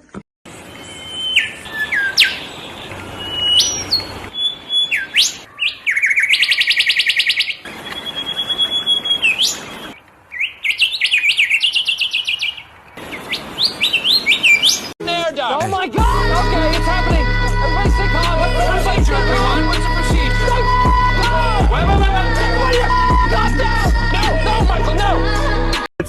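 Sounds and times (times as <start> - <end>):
bird whistling and chirping: 0.8 - 12.6, 13.3 - 14.9.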